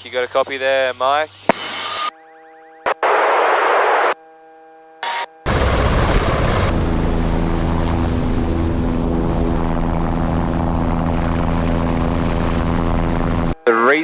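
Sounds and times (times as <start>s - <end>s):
helicopter engine and rotor drone: 5.5s - 13.6s.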